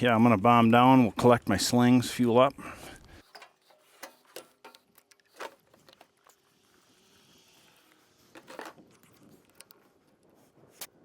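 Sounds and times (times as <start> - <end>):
climbing gear and rope clicks: 2.9 - 10.9.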